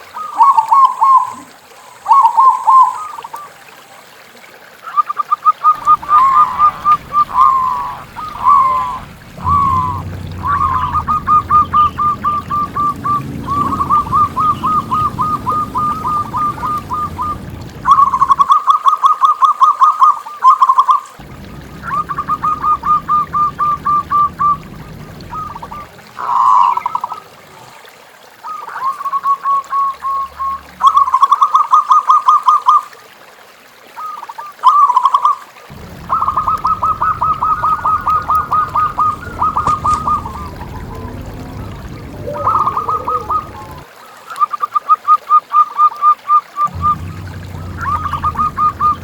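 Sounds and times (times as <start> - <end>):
dove cooing: 5.8 - 18.6, 21.2 - 27.2, 35.7 - 43.8, 46.6 - 49.0.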